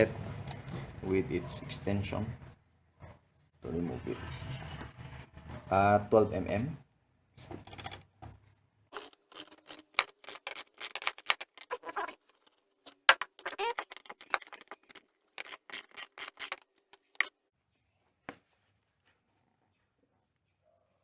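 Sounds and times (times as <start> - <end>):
socket ratchet clicking: 9.0 - 17.3.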